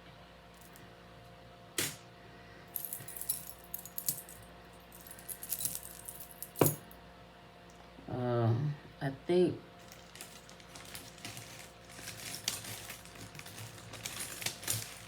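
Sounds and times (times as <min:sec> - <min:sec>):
jewelry clinking and jingling: 0:02.7 - 0:07.0.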